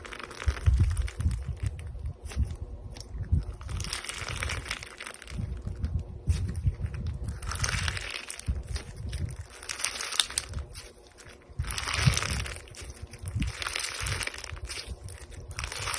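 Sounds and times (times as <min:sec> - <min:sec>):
slime crackling and squelching: 0:00.0 - 0:15.9.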